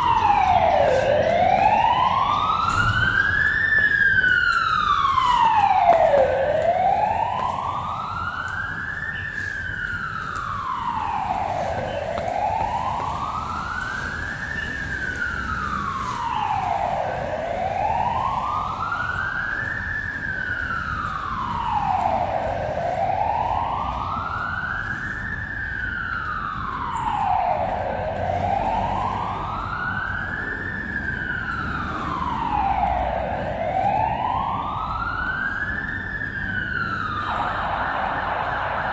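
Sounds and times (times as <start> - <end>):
low traffic hum: 0.0 - 38.9
siren wailing: 0.0 - 38.9.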